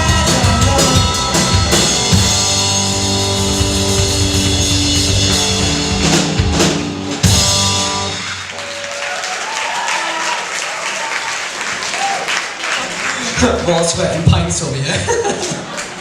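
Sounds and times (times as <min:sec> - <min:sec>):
live rock band playing: 0:00.0 - 0:08.7
crowd applauding and cheering: 0:07.3 - 0:13.9, 0:15.3 - 0:16.0.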